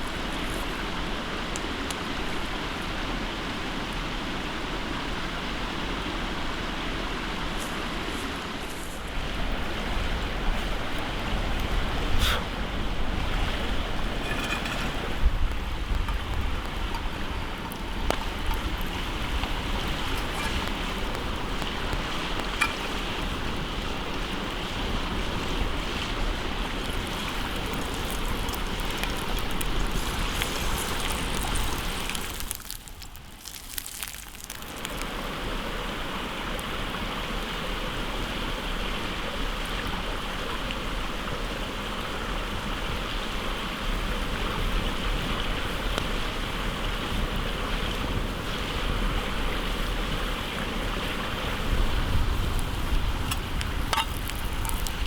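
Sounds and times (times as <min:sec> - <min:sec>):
hot oil sizzling and crackling: 0:13.6 - 0:35.2, 0:51.5 - 0:55.0.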